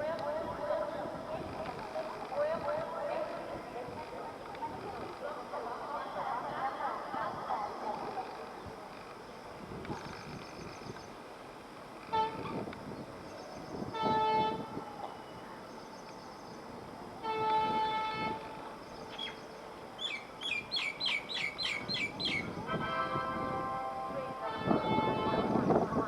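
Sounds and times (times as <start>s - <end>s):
low rumble of rail noise: 0.0s - 26.0s
locomotive horn blasts: 12.1s - 12.6s, 13.9s - 14.8s, 17.2s - 18.6s, 22.6s - 26.0s
bird chirping rapidly: 19.1s - 22.6s.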